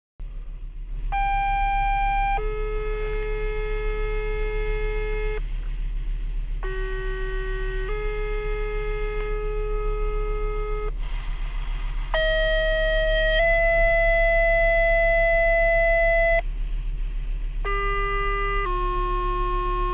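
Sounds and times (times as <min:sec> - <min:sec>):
low hum: 0:00.2 - 0:19.9
two-tone pager tones over radio: 0:01.2 - 0:05.4
radio static hiss: 0:02.3 - 0:05.8, 0:07.4 - 0:13.3.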